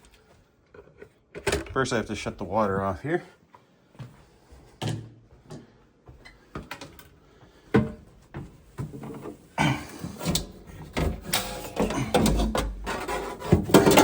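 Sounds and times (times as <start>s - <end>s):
rustling and clunking: 4.8s - 14.0s.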